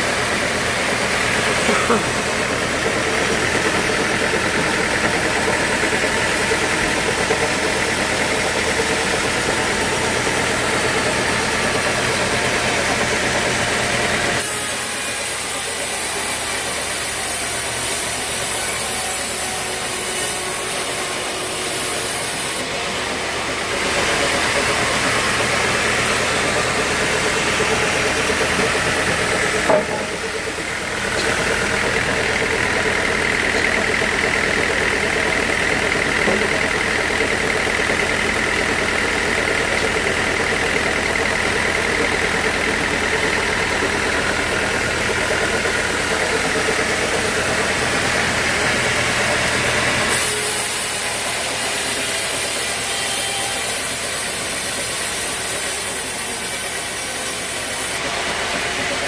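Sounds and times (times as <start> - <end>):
sawmill machinery running: 0.0 - 59.0
hiss: 14.4 - 22.6, 50.0 - 58.9.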